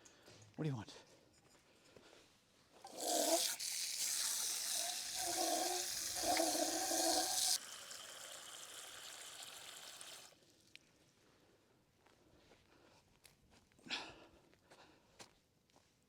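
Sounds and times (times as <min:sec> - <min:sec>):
water running: 0:02.8 - 0:10.3.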